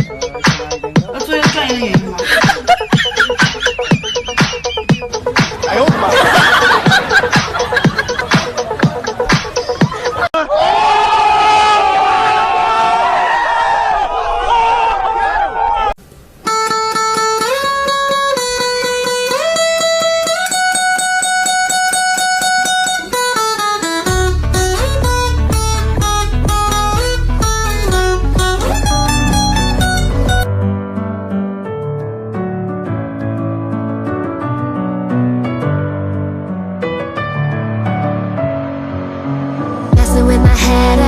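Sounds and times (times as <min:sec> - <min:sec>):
guitar sliding melody: 0:00.0 - 0:10.1, 0:16.4 - 0:30.7
electronic dance music: 0:00.0 - 0:10.3, 0:27.7 - 0:30.5
plucked guitar rhythm: 0:00.0 - 0:10.3, 0:16.5 - 0:30.5
steady kick drum: 0:24.2 - 0:30.5, 0:40.0 - 0:40.6.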